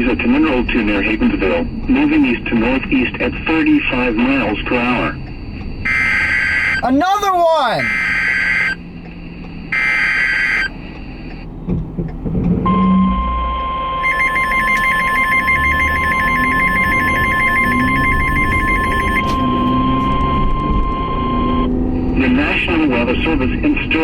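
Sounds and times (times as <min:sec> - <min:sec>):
fast two-pitch warbling alarm: 0:13.4 - 0:20.7
steady alert tone: 0:14.0 - 0:19.2.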